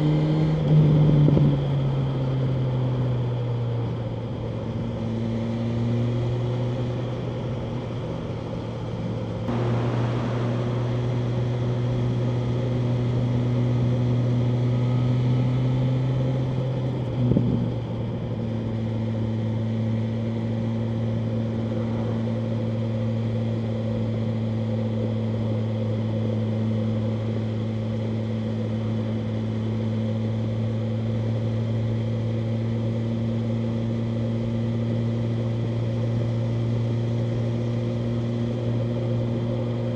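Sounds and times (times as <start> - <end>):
motorcycle engine running: 9.5 - 16.8.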